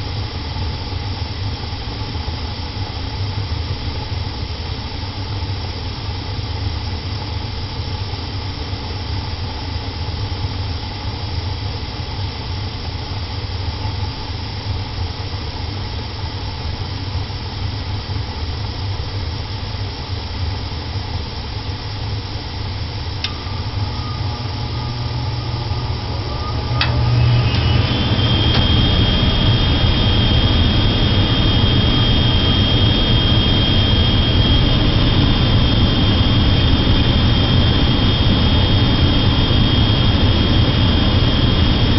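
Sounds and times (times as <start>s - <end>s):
furnace whine: 21.4s - 41.9s
gas furnace rumbling: 23.0s - 41.9s.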